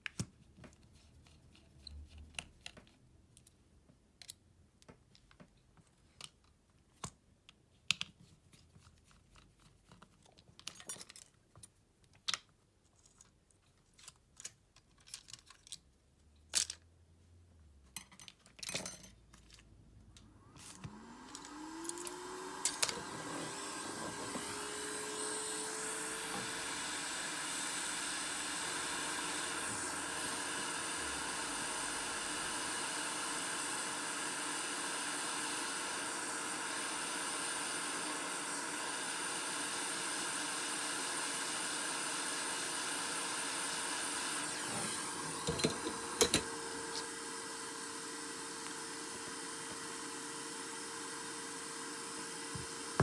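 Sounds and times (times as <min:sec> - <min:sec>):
electric blower motor whine: 0:20.3 - 0:53.0.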